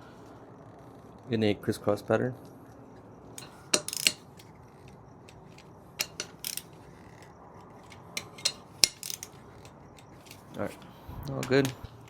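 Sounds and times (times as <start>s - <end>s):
torque wrench metallic clicks: 3.4s - 10.7s.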